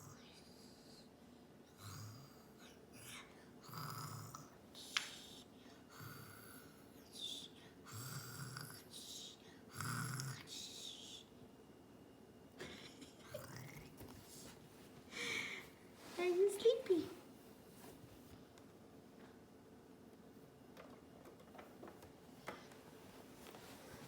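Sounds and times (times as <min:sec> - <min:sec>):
toddler fake-snoring: 0:00.0 - 0:01.1, 0:01.7 - 0:11.3, 0:13.2 - 0:14.4.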